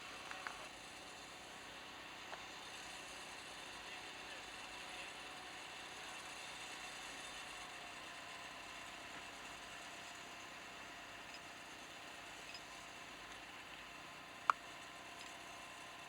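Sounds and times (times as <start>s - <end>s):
faint mechanical hum: 0.0s - 16.0s.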